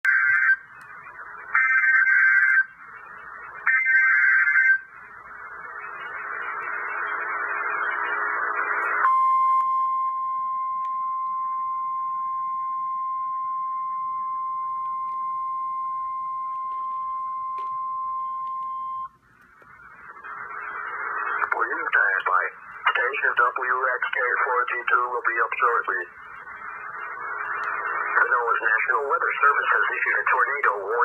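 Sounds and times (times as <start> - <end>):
radio static hiss: 0.1 - 9.0, 18.5 - 31.0
steady warning alarm tone: 0.1 - 19.2.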